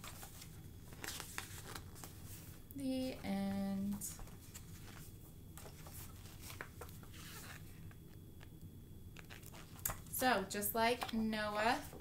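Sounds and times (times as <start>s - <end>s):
book pages rustling: 0.0s - 8.5s, 9.2s - 10.2s
low hum: 0.0s - 12.0s.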